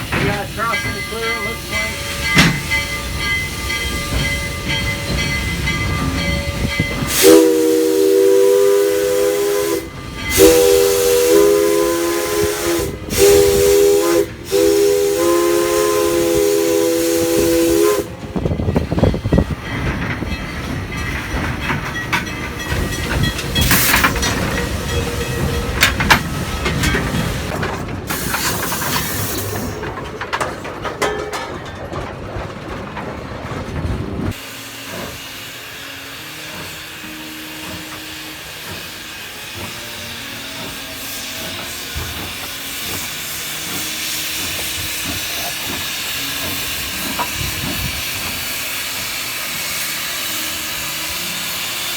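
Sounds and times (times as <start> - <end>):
low knocking and clanking: 0.0 - 7.1, 18.1 - 35.2, 37.6 - 48.6
steam locomotive hissing: 0.0 - 30.0, 34.1 - 51.9.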